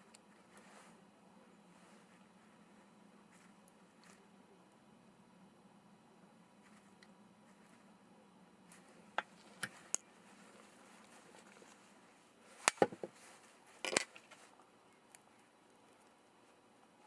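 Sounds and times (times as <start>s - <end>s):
small hard parts clicking on workbench: 13.8s - 14.3s.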